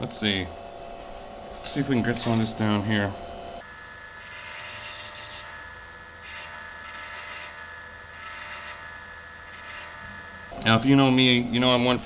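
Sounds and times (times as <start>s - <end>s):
grinding metal ring: 3.6s - 10.5s
rotary tool whine: 3.6s - 10.6s.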